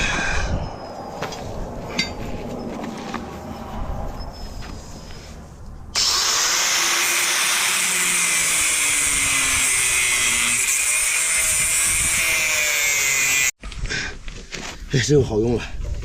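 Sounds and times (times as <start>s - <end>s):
power tool cutting: 6.0s - 13.6s.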